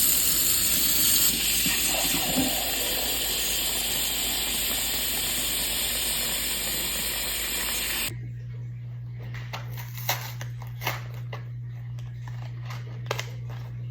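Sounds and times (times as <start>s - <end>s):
loud hissing: 0.0s - 8.1s.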